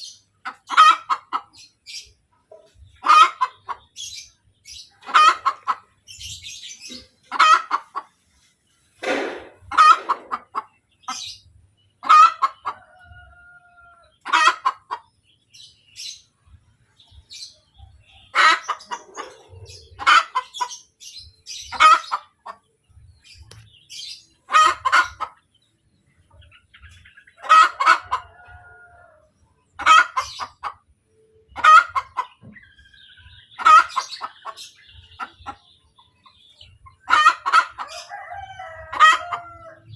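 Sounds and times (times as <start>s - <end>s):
hen cackling: 0.4s - 1.5s, 3.0s - 3.9s, 5.0s - 5.9s, 7.3s - 8.0s, 9.1s - 11.3s, 12.0s - 15.1s, 18.3s - 20.9s, 21.7s - 22.6s, 24.5s - 25.4s, 27.4s - 29.2s, 29.8s - 30.9s, 31.6s - 32.4s, 33.6s - 34.6s, 37.0s - 39.9s.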